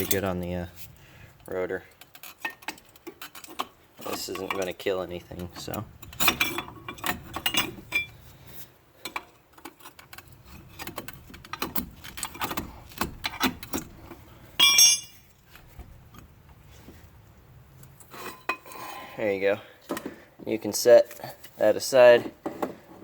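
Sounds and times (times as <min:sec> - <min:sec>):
metal clinks and knocks: 0:01.9 - 0:08.3, 0:09.0 - 0:16.3
loud ringing metal strike: 0:14.6 - 0:15.2.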